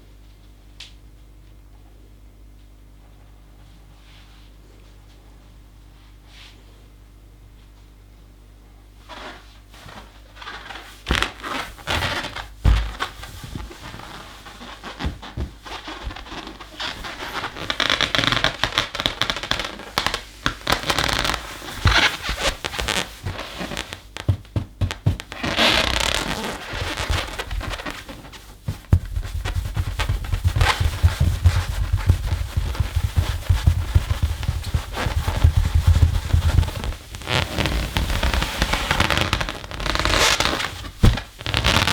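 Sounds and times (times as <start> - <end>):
claws scratching balloon: 11.1 - 41.9
rubber balloon squeaking: 11.1 - 41.9.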